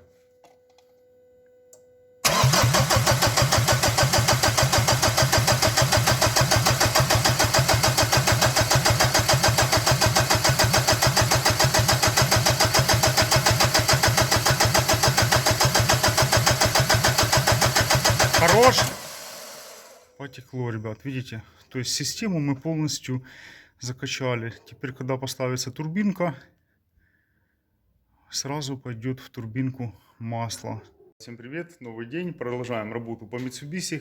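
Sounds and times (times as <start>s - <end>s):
engine cranking on starter motor: 2.2s - 20.2s.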